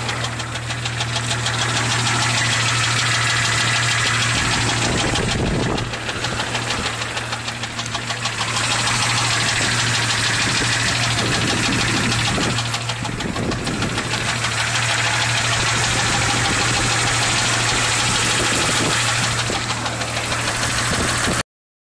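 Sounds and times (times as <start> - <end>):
car engine running: 0.0 - 21.4
fast engine knock: 0.0 - 21.4.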